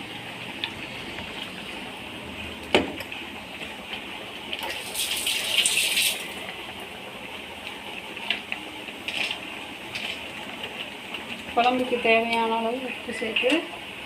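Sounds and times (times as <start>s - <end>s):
liquid pouring into a pot: 4.5s - 6.5s.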